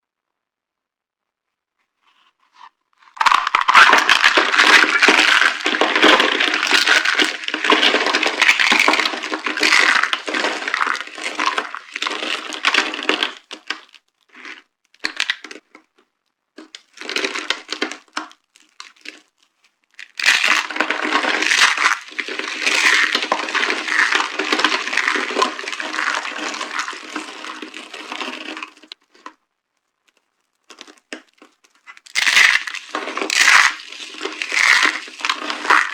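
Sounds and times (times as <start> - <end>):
cardboard boxes crunching: 3.2 - 13.8, 16.6 - 18.2, 20.1 - 29.2, 30.7 - 35.9.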